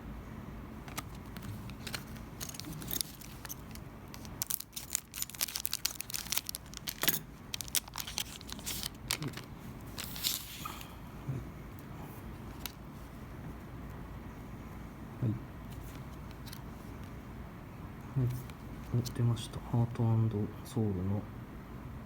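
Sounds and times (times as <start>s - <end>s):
wrapper crinkling and tearing: 0.9s - 10.6s.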